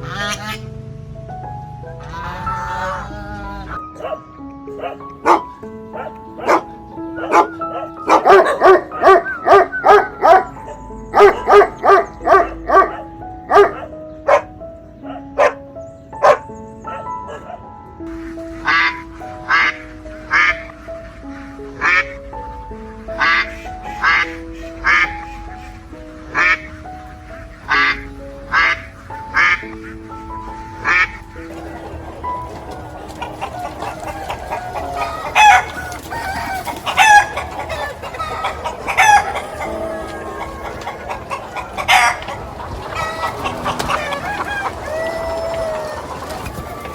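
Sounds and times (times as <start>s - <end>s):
duck quacking: 0.0s - 0.7s, 2.0s - 4.2s, 18.1s - 22.2s, 23.0s - 46.9s
background music tones: 0.0s - 46.9s
dog barking: 3.9s - 15.6s, 16.2s - 17.7s.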